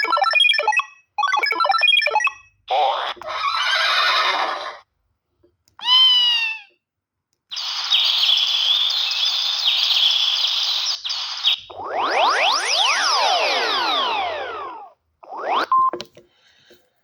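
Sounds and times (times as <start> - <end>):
rising and falling electronic sweeps: 11.5 - 16.0.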